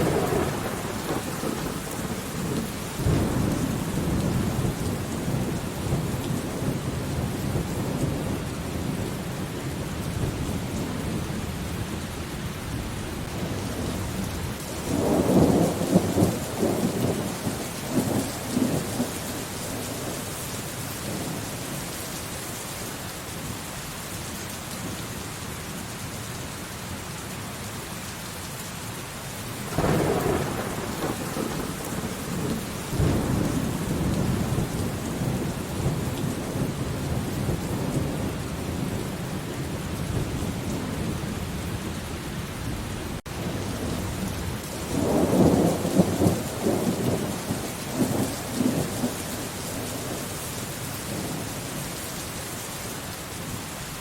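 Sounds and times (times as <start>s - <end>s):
thunder rumbling: 0.0s - 11.2s, 29.6s - 50.3s
steady rain falling: 0.0s - 54.0s.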